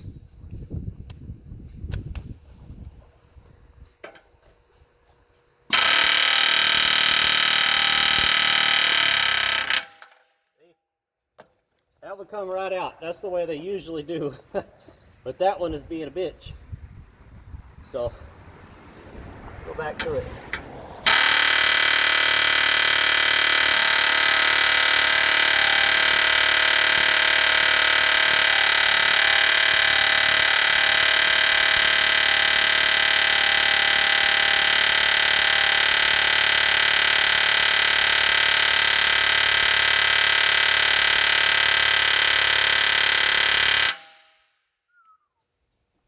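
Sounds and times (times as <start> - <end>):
pneumatic air hammer rattling: 3.8 - 10.2, 20.0 - 44.2.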